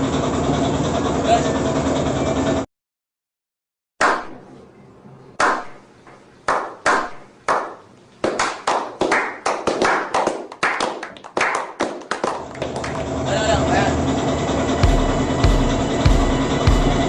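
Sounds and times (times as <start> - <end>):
sharp hand claps: 4.0 - 4.4, 5.4 - 5.8, 6.5 - 13.1.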